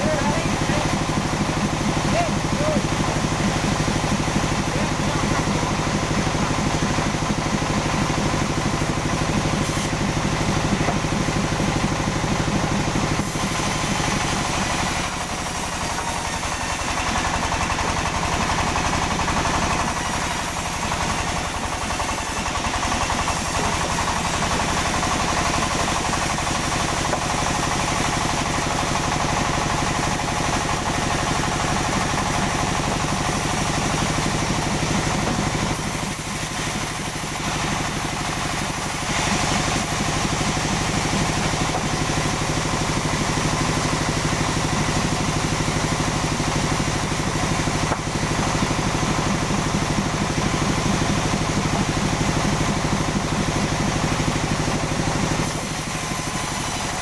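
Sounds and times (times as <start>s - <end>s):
sawmill machinery running: 0.0s - 57.0s.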